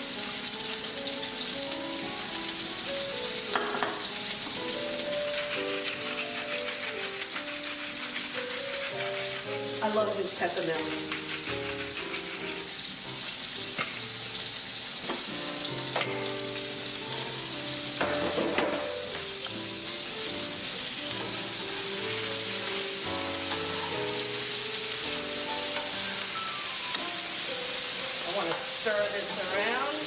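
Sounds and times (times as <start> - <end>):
potatoes sizzling in oil: 0.0 - 30.0
utensil clicking on pan: 5.2 - 10.0, 10.8 - 13.0, 23.4 - 24.2.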